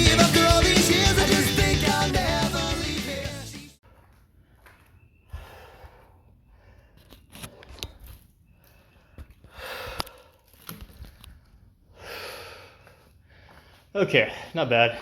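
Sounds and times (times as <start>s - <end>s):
person breathing heavily: 5.3s - 10.5s, 11.8s - 15.0s.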